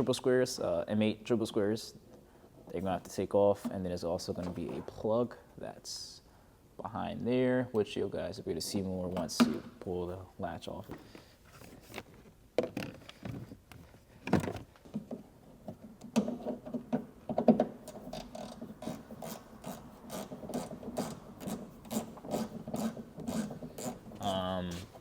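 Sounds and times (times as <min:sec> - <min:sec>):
hand ratchet clicking: 0:18.1 - 0:25.0.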